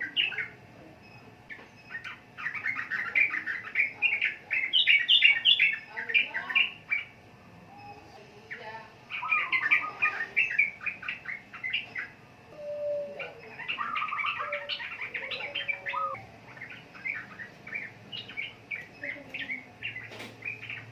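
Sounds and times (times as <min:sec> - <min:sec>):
bird singing chattering notes: 0:00.0 - 0:07.2, 0:08.5 - 0:12.2, 0:13.2 - 0:20.9
lower whistled bird notes: 0:12.6 - 0:16.3.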